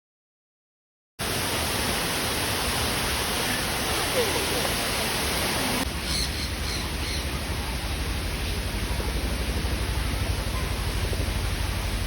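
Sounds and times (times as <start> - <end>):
rushing background noise: 1.3 - 12.0
high bird calls: 6.0 - 7.4.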